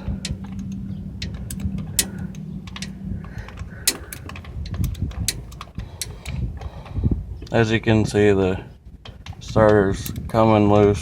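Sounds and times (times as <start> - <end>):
low hum: 0.0 - 7.5.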